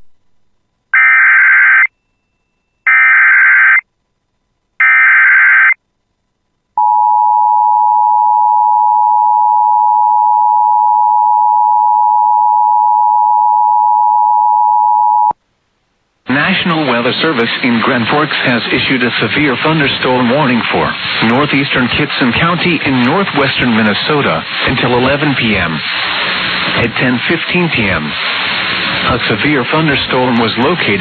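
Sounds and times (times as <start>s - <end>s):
steady emergency attention tone: 1.0s - 2.3s, 2.9s - 3.8s, 4.8s - 5.8s, 6.8s - 15.4s.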